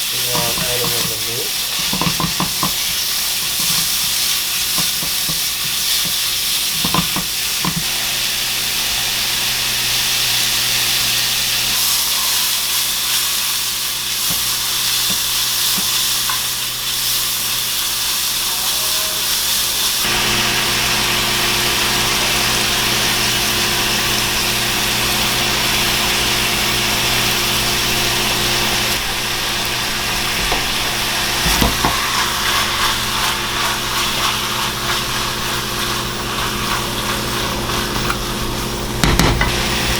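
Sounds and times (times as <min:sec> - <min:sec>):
noodles sizzling in a pan: 0:00.0 - 0:39.9
utensil knocking on pan: 0:00.3 - 0:03.9, 0:04.7 - 0:07.9, 0:31.4 - 0:32.2, 0:39.0 - 0:39.6.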